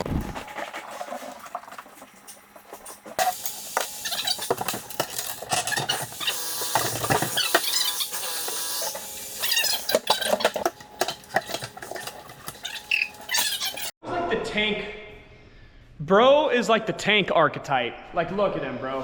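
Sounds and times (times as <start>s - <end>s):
debris clattering and scraping: 0.0s - 8.6s, 9.5s - 13.9s
squeaks: 5.5s - 8.5s, 9.4s - 10.7s, 11.4s - 13.9s.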